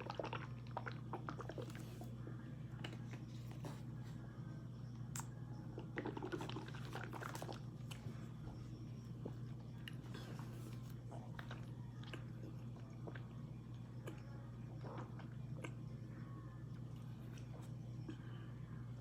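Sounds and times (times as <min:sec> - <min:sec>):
low steady hum: 0:00.0 - 0:19.0
person chewing crunchily: 0:09.2 - 0:13.4.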